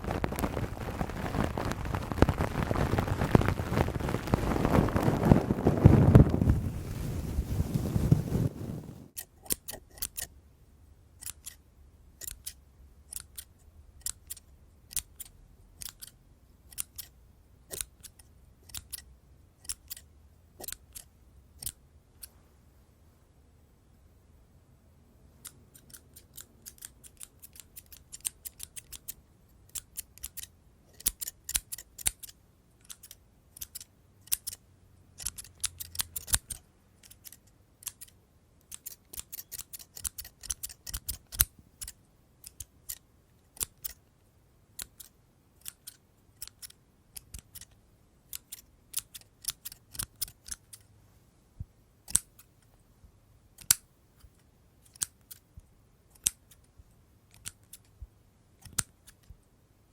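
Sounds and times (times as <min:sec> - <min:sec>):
scissors snipping: 0:09.2 - 0:10.3, 0:11.2 - 0:11.6, 0:12.2 - 0:17.1, 0:17.7 - 0:21.8, 0:25.4 - 0:34.6, 0:35.2 - 0:44.0, 0:44.8 - 0:50.8, 0:52.1 - 0:52.5, 0:53.6 - 0:55.4, 0:56.1 - 0:56.7, 0:57.3 - 0:58.0, 0:58.6 - 0:59.4.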